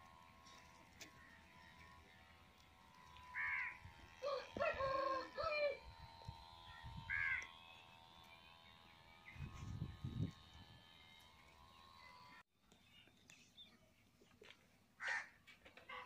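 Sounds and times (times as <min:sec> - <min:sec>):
birds calling: 0:00.1 - 0:05.8, 0:06.4 - 0:09.6.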